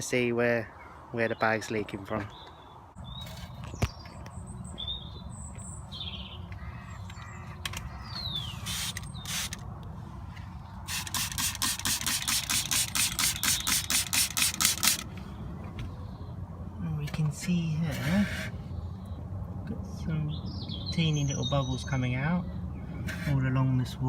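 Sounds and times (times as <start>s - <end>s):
birds chirping: 0.0s - 24.0s
spray bottle squirting: 8.6s - 9.6s, 10.9s - 15.0s.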